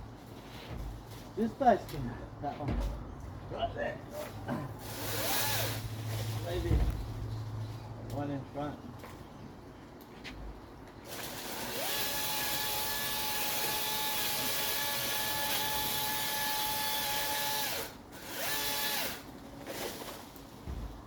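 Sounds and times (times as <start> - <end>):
power tool motor whining: 11.1 - 19.2.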